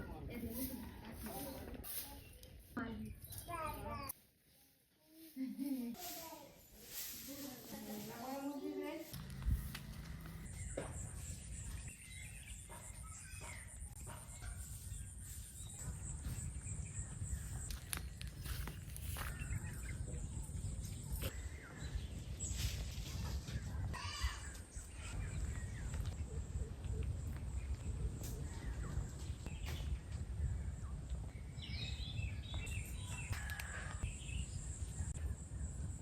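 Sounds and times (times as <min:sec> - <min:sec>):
bird calls: 0:09.0 - 0:35.3
low rumble: 0:09.2 - 0:11.9.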